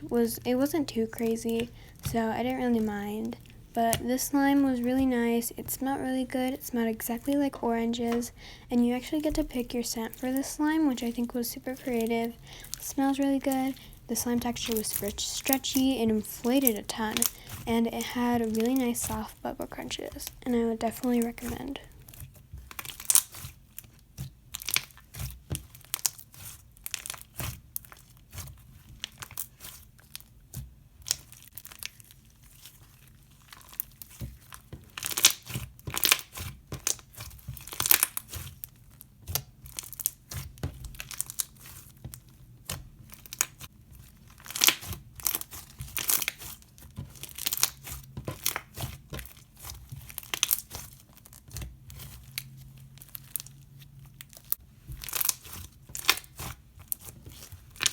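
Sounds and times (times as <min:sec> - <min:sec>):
slime crackling and popping: 0:00.0 - 0:57.9.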